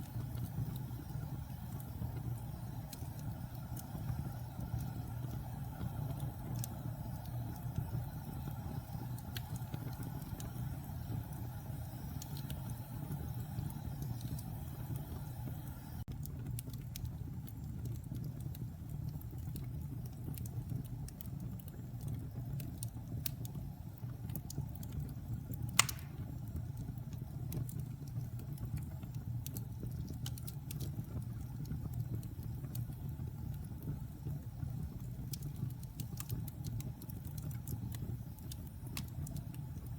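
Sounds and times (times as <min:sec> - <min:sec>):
fire crackling: 0:00.0 - 0:39.9
wood fire rumbling: 0:00.0 - 0:39.9
sharp pop: 0:25.8 - 0:26.2.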